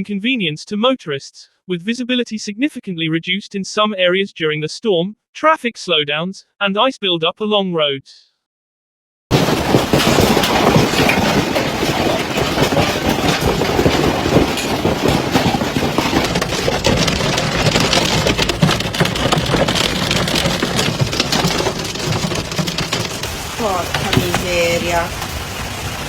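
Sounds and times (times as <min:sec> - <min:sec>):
hail clattering on hard surfaces: 0:09.3 - 0:26.0.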